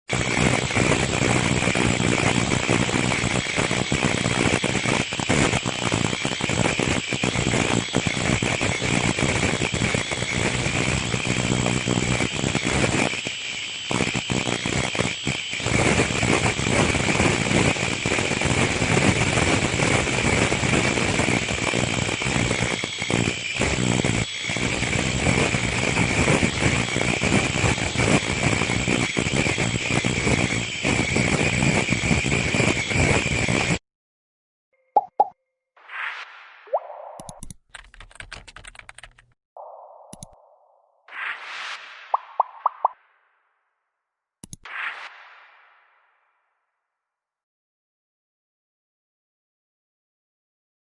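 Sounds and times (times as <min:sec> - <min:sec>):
welding machine clatter and whine: 0:00.1 - 0:33.8, 0:37.3 - 0:39.4.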